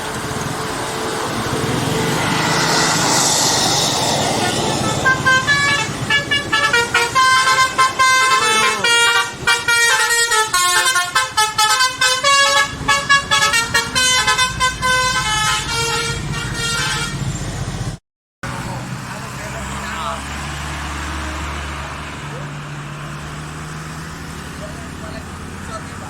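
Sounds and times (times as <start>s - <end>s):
bus engine running: 0.0s - 26.0s
multi-tone air horns playing tune: 4.4s - 17.2s.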